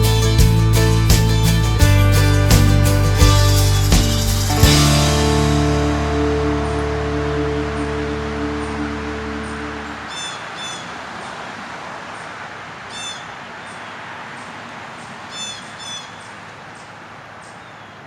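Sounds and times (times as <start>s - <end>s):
steady rushing hiss: 0.0s - 7.1s
bird harsh calls: 9.1s - 11.4s, 12.9s - 14.0s, 15.3s - 18.0s.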